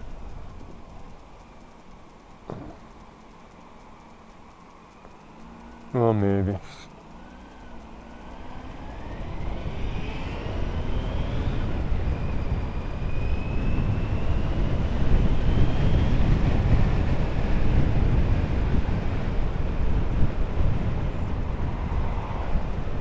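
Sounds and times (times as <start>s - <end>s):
motorcycle engine accelerating: 5.0s - 23.0s
wind noise: 8.6s - 23.0s.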